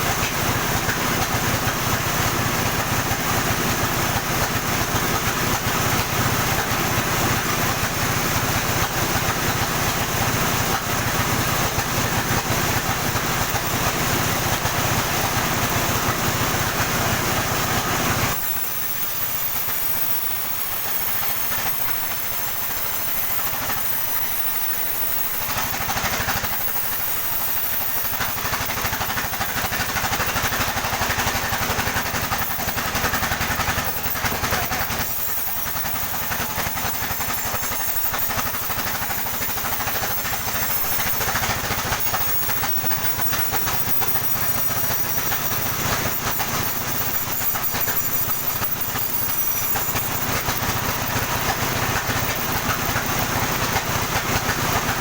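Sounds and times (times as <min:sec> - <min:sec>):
sawmill sawing: 0:00.0 - 0:55.0
engine hum: 0:24.6 - 0:55.0.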